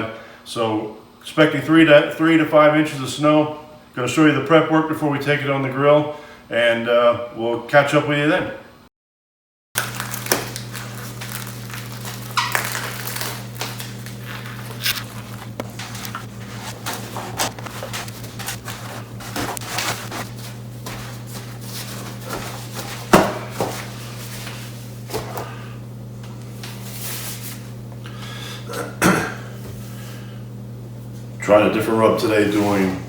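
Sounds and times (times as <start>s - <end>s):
steady low hum: 9.8s - 33.0s.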